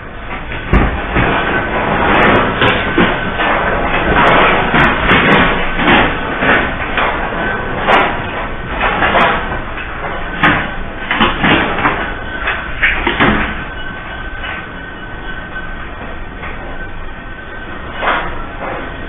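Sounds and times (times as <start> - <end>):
earthquake rumbling: 0.0 - 14.4
building banging and rattling: 0.0 - 16.8.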